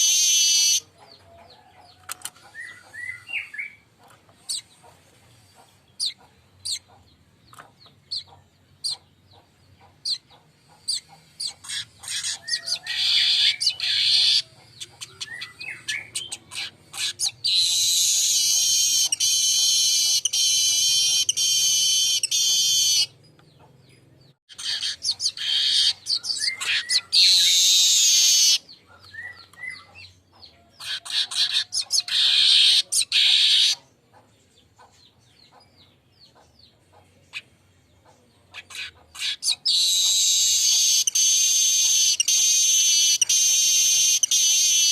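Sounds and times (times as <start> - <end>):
bird buzzy trills: 0.0 - 0.9, 10.8 - 23.2, 24.5 - 28.6, 38.8 - 44.9.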